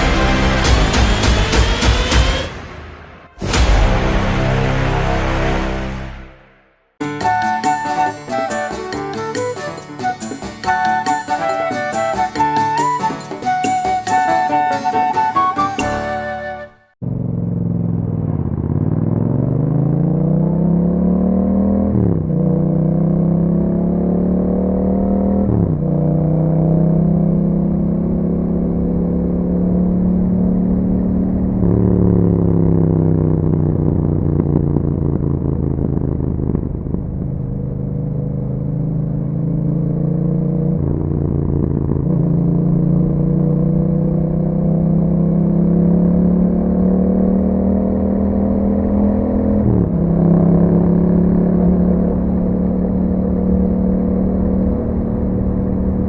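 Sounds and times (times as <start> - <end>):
motorcycle engine accelerating: 17.0 - 56.0.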